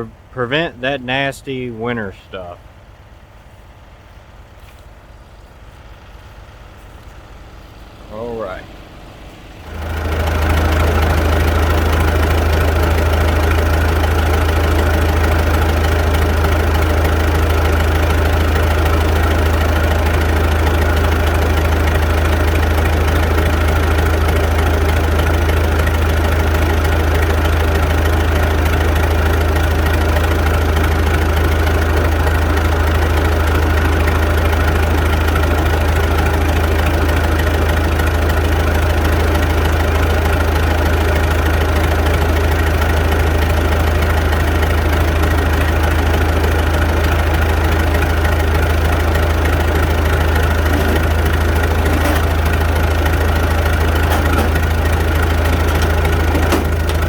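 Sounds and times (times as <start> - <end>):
tractor engine idling: 0.0 - 57.0.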